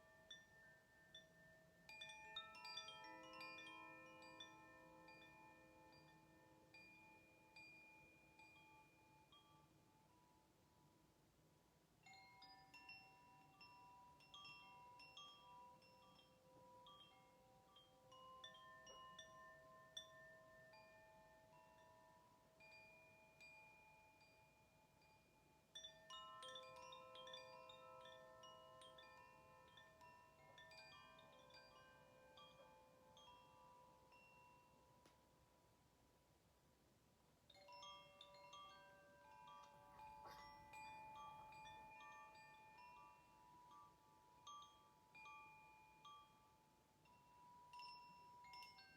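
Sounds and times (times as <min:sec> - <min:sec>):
faint chimes ringing: 0:37.6 - 0:46.5.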